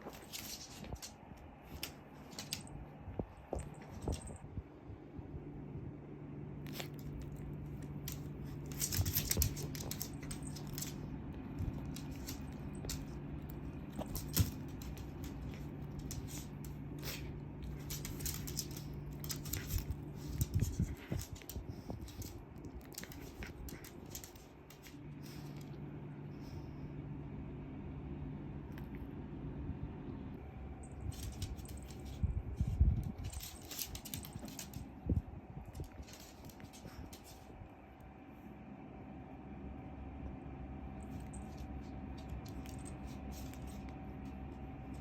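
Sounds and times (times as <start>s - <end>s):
animals scuffling: 0.0s - 4.4s, 6.7s - 25.6s, 30.9s - 37.6s, 41.1s - 45.0s
steady low hum: 0.0s - 45.0s
light clicks taps and rustles: 6.7s - 25.7s, 31.1s - 34.9s.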